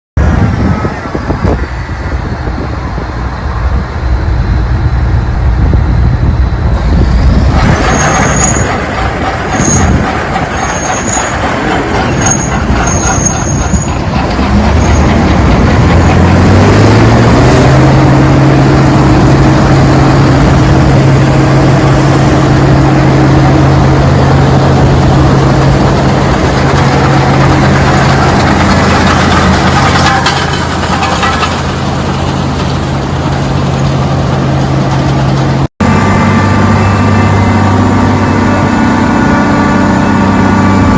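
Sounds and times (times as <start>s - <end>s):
combine diesel engine revving: 14.2s - 30.0s.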